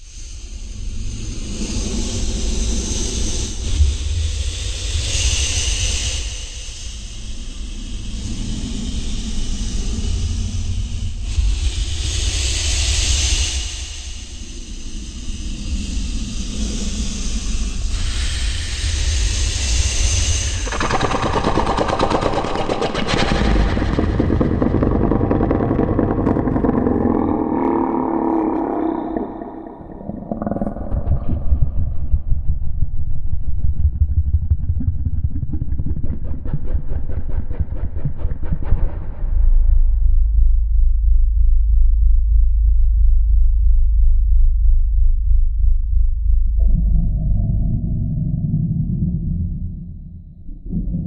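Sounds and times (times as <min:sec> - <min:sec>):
deep rumble: 0:20.2 - 0:51.0
low rattling growl: 0:20.6 - 0:32.3.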